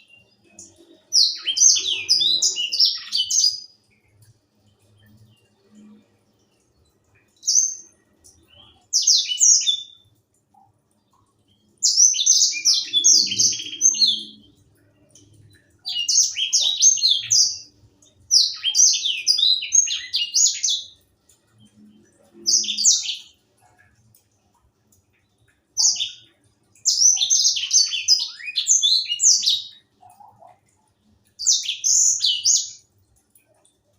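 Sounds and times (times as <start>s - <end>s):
finch twittering song: 0.0s - 4.1s, 11.5s - 23.3s, 25.8s - 30.2s.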